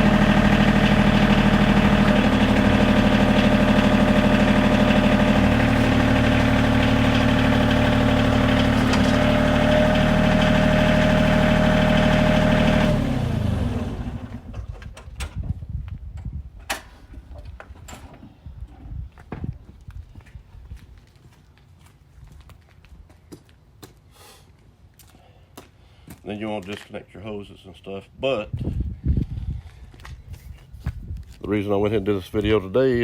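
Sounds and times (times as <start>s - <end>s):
diesel tractor engine running: 0.0s - 15.6s.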